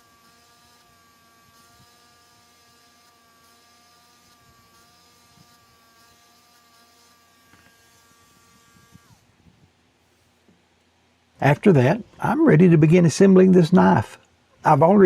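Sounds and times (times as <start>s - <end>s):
electric engraving tool buzzing: 0.0s - 9.3s.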